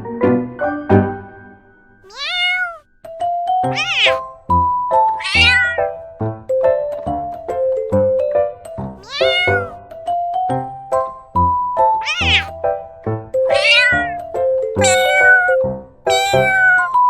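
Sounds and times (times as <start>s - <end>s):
cat meowing: 2.1s - 2.8s, 3.7s - 4.2s, 5.2s - 5.9s, 9.0s - 9.8s, 12.0s - 12.5s, 13.5s - 14.2s, 14.8s - 17.0s.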